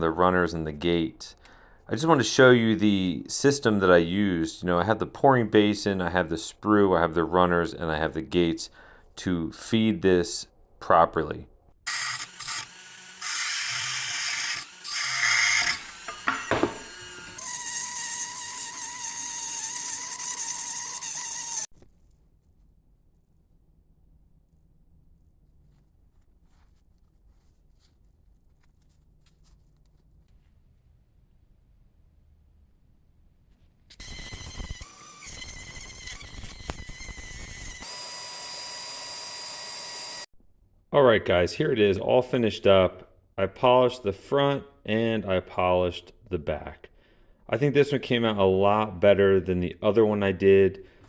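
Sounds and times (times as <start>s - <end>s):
power tool cutting metal: 11.9s - 21.7s, 34.0s - 40.3s.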